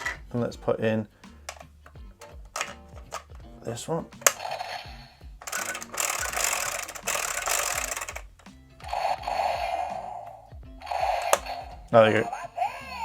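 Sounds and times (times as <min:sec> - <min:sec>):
toy speaker music: 0:04.2 - 0:13.0
toy blaster electronic sound effects: 0:04.3 - 0:08.2, 0:08.9 - 0:10.2, 0:10.8 - 0:11.8.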